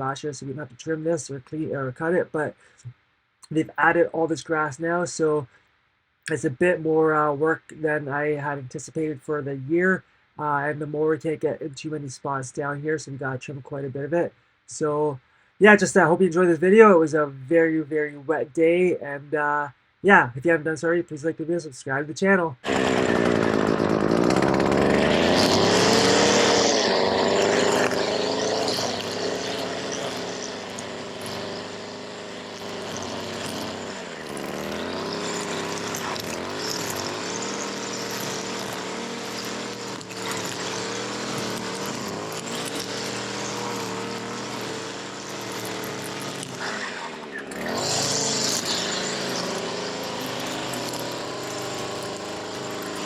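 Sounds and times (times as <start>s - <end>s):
string trimmer engine revving: 22.6s - 53.0s.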